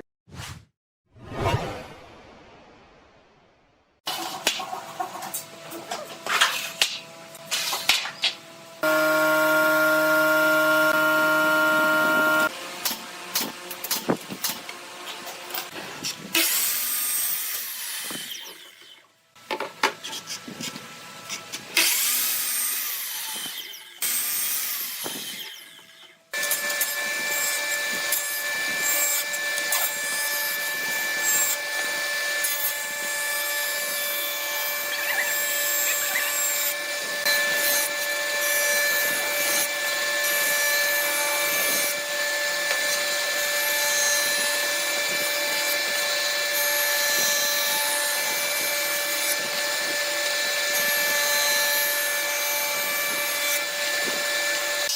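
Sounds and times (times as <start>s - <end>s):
power tool whining: 8.8s - 12.5s.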